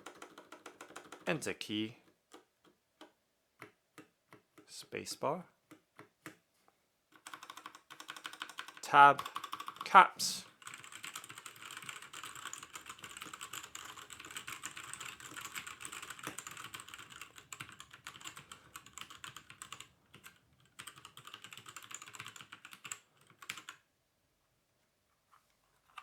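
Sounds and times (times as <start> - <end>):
fast mechanical keyboard typing: 0.0 - 1.3, 7.2 - 23.8.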